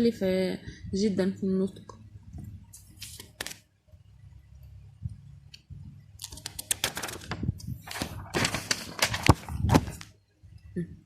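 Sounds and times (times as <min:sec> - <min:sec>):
low steady hum: 0:00.0 - 0:11.0
clicks and crackles: 0:05.5 - 0:07.4.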